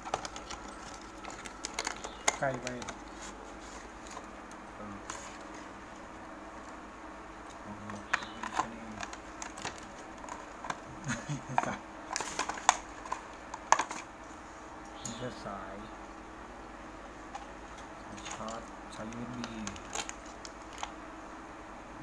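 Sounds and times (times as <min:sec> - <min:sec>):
plastic parts clicking and tapping: 0:00.0 - 0:03.0, 0:07.8 - 0:10.8, 0:11.5 - 0:14.0, 0:18.2 - 0:20.9.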